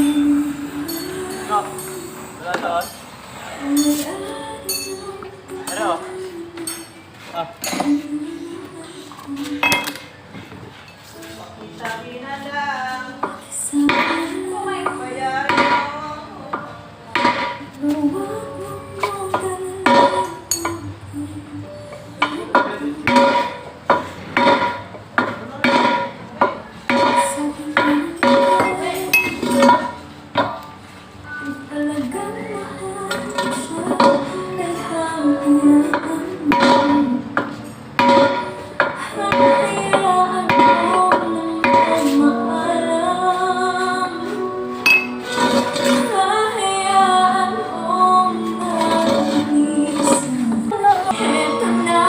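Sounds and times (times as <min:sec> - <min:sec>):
woman singing with instruments: 0:00.0 - 0:25.0, 0:25.6 - 0:52.0
hammer striking metal wheel: 0:22.2 - 0:30.6, 0:35.9 - 0:42.2, 0:44.9 - 0:46.0.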